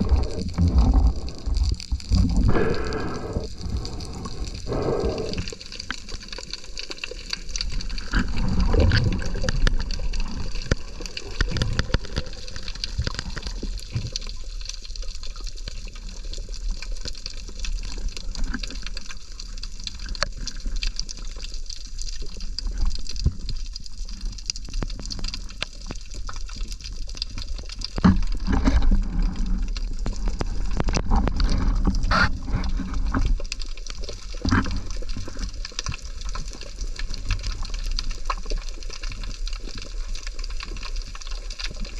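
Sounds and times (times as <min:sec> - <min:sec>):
water sloshing and rushing: 0:00.0 - 0:15.2, 0:15.8 - 0:41.9
small clicks and knocks: 0:10.6 - 0:14.3, 0:27.2 - 0:39.3.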